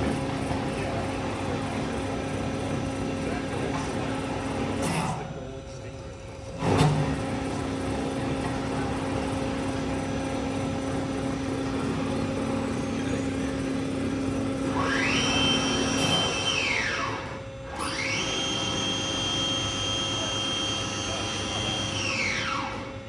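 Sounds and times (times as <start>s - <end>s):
band sawmill humming: 6.6s - 23.0s.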